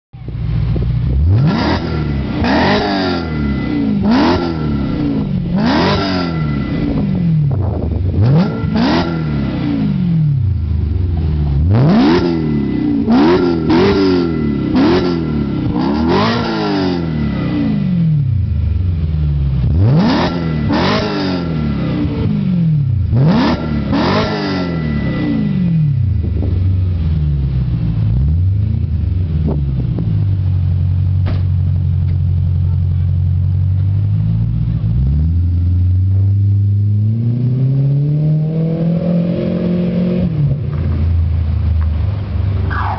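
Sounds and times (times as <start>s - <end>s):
car engine idling: 0.2s - 16.3s, 17.2s - 20.0s, 24.9s - 36.7s, 40.5s - 42.9s
car engine revving: 0.2s - 42.9s.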